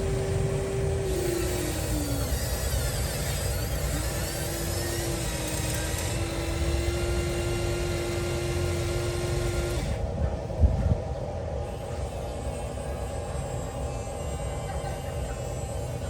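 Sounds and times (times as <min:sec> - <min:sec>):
electric motor whining: 0:00.0 - 0:10.0.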